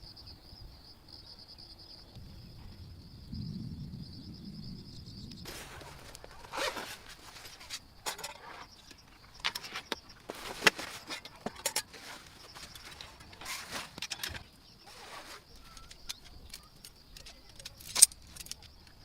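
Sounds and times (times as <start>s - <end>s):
crickets chirping: 0.0s - 19.0s
tent zipper: 5.5s - 8.8s, 9.5s - 15.8s
fabric rustling: 5.5s - 16.0s.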